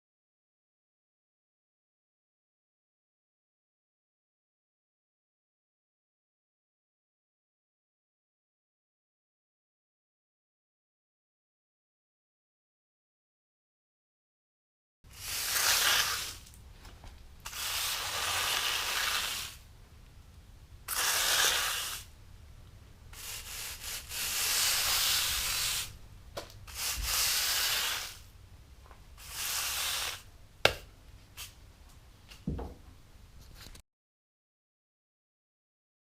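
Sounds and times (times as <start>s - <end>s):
abrasive rubbing strokes: 23.2s - 26.0s.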